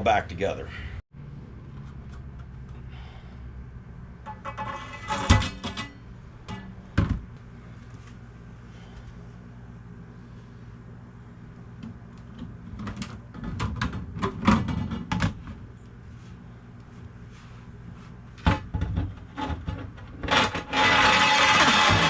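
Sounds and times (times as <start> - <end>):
steady low hum: 0.0 - 22.0
parts knocking and clattering: 4.2 - 7.3, 12.3 - 15.6, 18.4 - 22.0.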